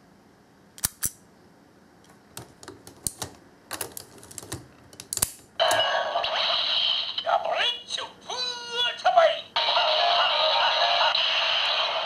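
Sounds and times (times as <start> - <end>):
toy electronic voice: 5.7 - 12.0.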